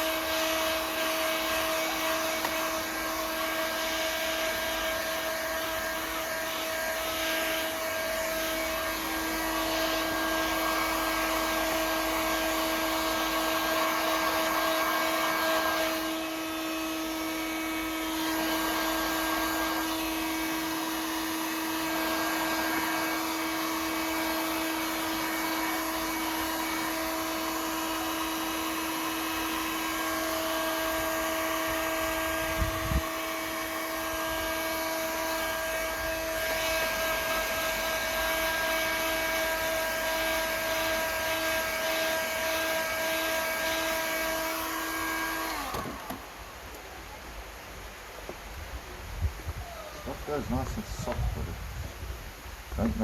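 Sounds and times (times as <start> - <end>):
hot-air blower motor whine: 0.0 - 53.0.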